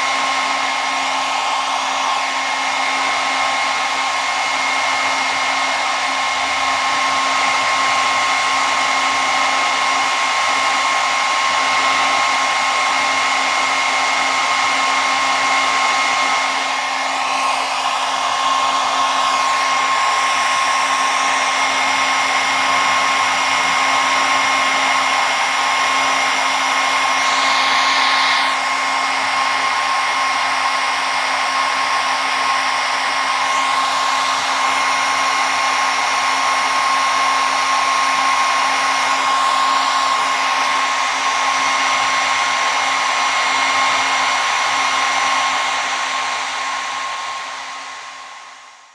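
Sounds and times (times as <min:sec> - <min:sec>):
hair dryer running: 0:00.0 - 0:48.9.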